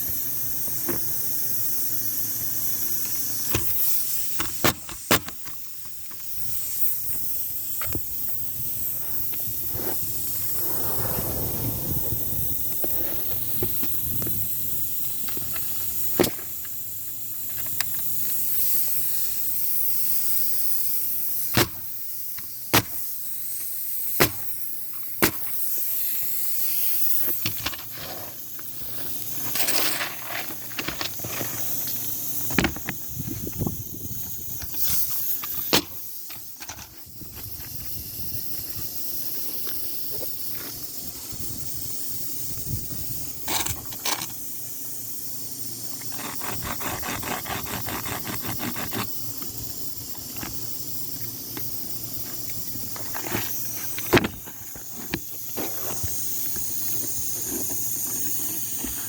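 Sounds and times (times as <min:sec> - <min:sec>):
steady hiss: 0:09.5 - 0:14.5.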